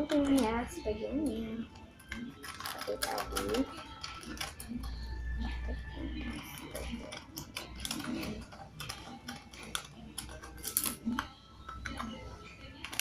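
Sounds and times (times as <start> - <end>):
scissors snipping: 6.4 - 12.1.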